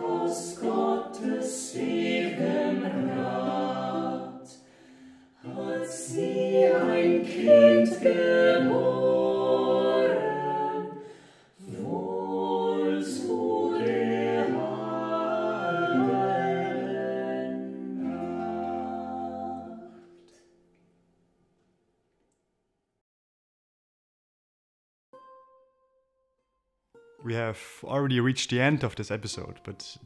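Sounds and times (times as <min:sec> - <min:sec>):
choir singing a hymn: 0:00.0 - 0:20.1.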